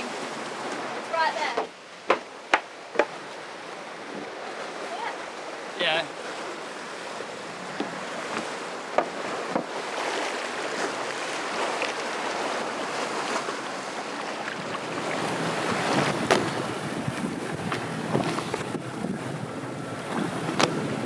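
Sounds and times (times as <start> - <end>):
water splashing against boat hull: 0.0 - 21.0
wind on microphone: 14.5 - 21.0.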